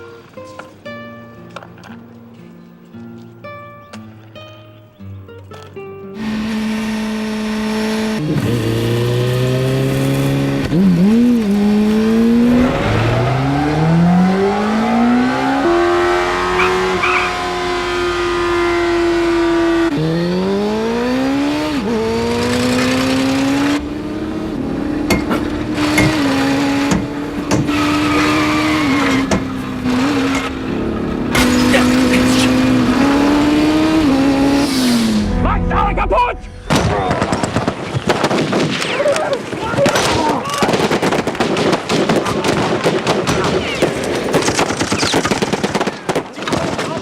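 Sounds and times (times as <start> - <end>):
car engine revving through gears: 6.2 - 35.4.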